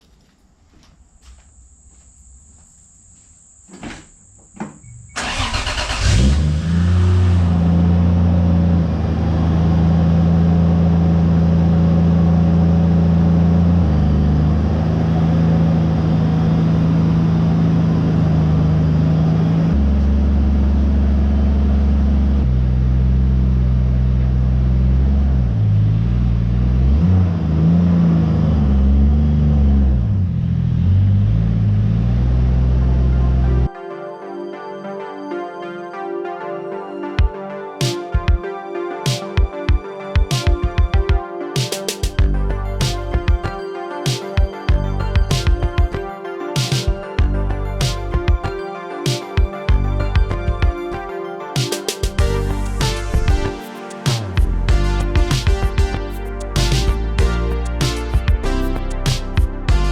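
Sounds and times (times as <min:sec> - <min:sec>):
car engine cranking and starting: 0:05.0 - 0:08.0.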